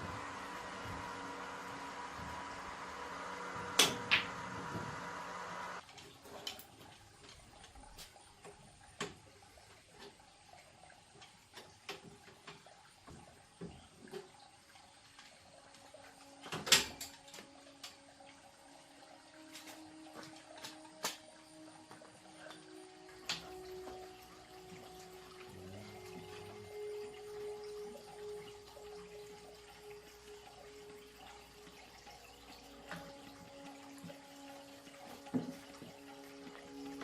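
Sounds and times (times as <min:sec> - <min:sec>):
machine hum: 0:00.0 - 0:05.8, 0:22.7 - 0:37.0.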